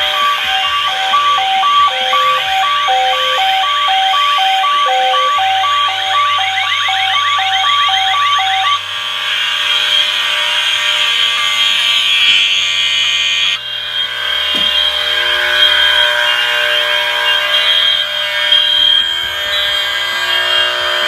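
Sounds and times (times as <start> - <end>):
hi-lo two-tone alarm: 0.0 - 8.8
repeating alarm sweeps: 0.0 - 8.9
fire alarm horns and sirens: 0.0 - 21.0.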